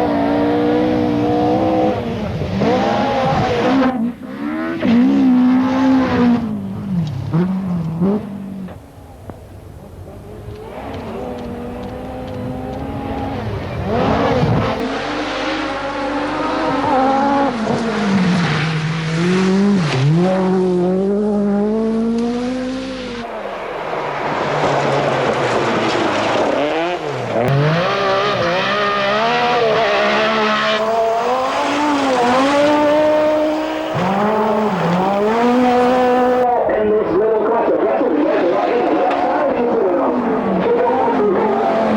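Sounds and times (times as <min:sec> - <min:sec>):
rally car engines at full throttle: 0:00.0 - 0:41.9.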